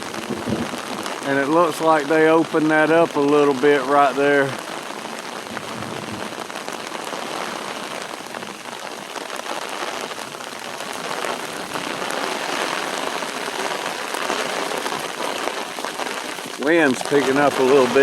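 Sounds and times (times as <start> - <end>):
raindrops ticking on surfaces: 0.0 - 18.0
steady rain: 0.0 - 18.0.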